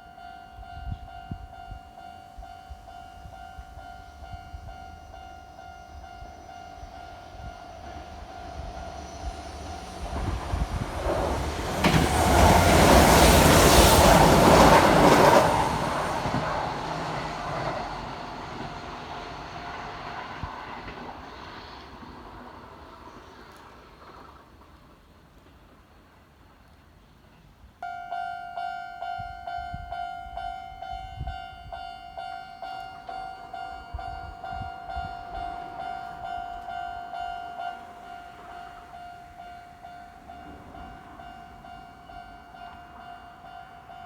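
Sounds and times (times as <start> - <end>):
electric train passing: 0.0 - 44.0
level crossing bell ringing: 27.8 - 44.0.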